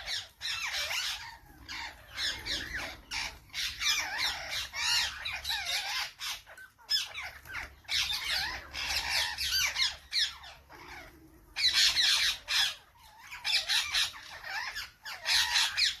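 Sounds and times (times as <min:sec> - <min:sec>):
parrots squawking and chattering: 0:00.0 - 0:16.0.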